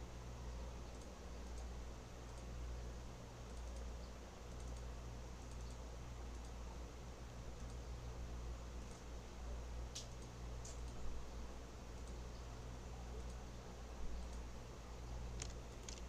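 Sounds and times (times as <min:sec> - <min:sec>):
low electrical hum: 0:00.0 - 0:16.0
keyboard and mouse clicks: 0:03.5 - 0:03.9, 0:04.5 - 0:06.6, 0:15.3 - 0:16.0.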